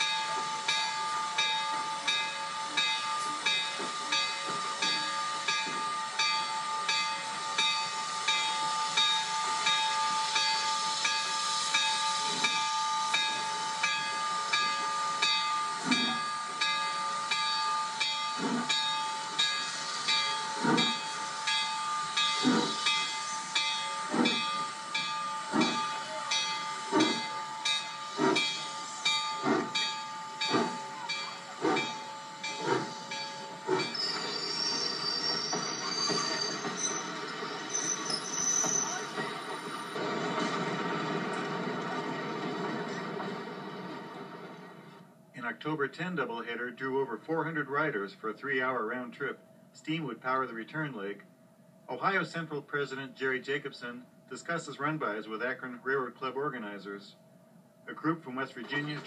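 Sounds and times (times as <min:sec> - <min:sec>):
locomotive exhaust chuffs: 0:00.0 - 0:45.1
steam locomotive hissing: 0:00.0 - 0:45.1.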